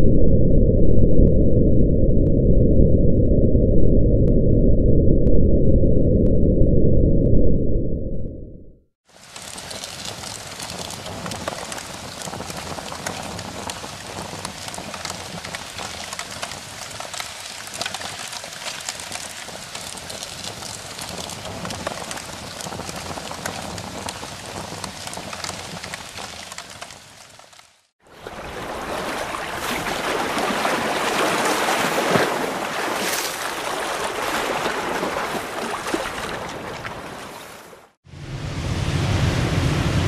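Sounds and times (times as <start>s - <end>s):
steady rain falling: 9.1s - 27.9s.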